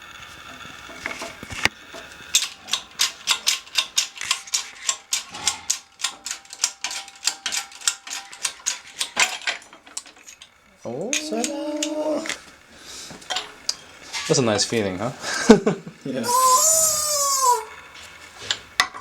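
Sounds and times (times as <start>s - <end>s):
rapid sharp tool clicks: 2.2s - 9.3s.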